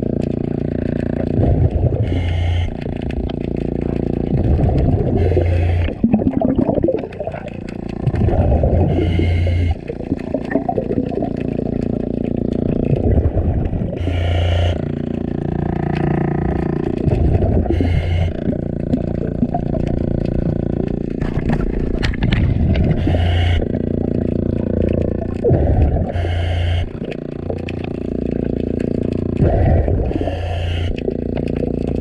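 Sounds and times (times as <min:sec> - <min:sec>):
scattered clicks: 0:00.0 - 0:06.0, 0:06.8 - 0:13.2, 0:14.0 - 0:32.0
exhaled bubbles: 0:00.0 - 0:32.0
steady mechanical hum: 0:00.0 - 0:32.0
diver breathing through regulator: 0:01.3 - 0:03.3, 0:04.8 - 0:06.4, 0:08.1 - 0:10.8, 0:13.3 - 0:15.3, 0:17.0 - 0:19.2, 0:22.2 - 0:27.4, 0:29.3 - 0:31.4.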